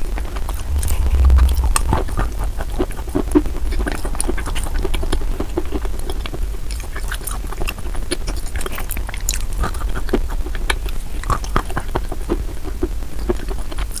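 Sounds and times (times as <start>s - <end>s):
steady low hum: 0.3s - 3.7s.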